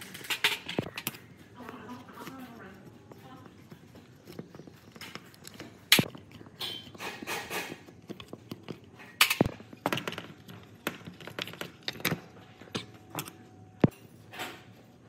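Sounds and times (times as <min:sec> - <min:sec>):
metal parts and tools clinking: 0:00.0 - 0:14.7.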